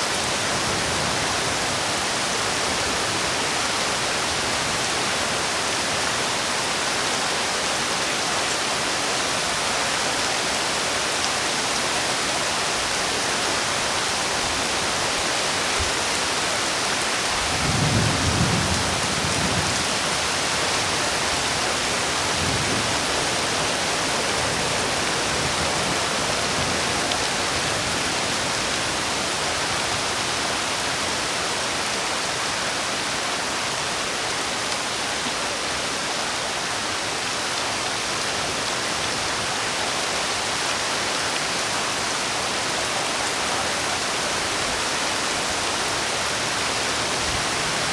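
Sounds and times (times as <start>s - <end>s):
steady rain falling: 0.0s - 47.9s
low rumble of thunder: 17.5s - 19.8s.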